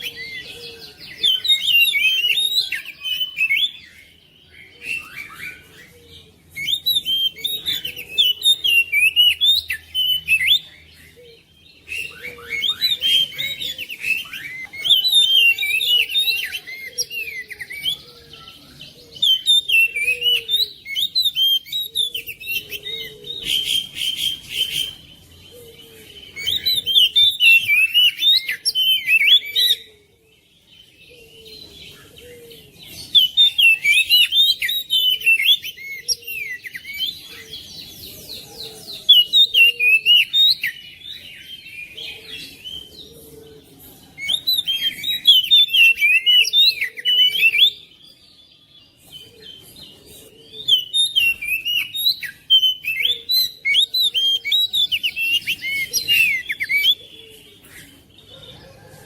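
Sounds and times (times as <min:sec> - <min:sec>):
bird chirps and whistles: 0:50.7 - 0:57.0.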